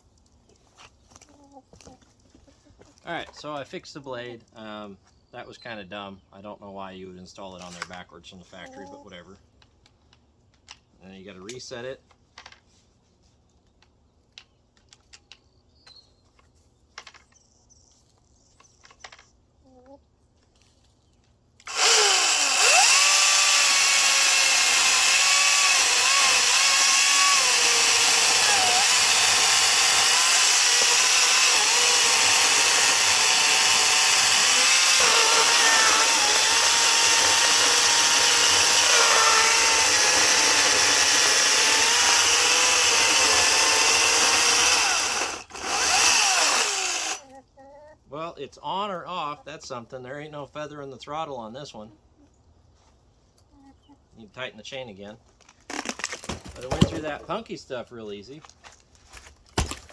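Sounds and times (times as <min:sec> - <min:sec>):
battery chainsaw cutting wood: 0:21.6 - 0:47.2.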